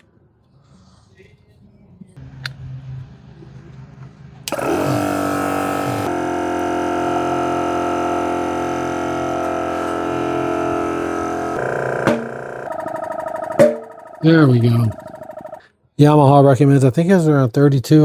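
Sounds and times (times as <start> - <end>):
electric air compressor running: 2.2 - 15.6.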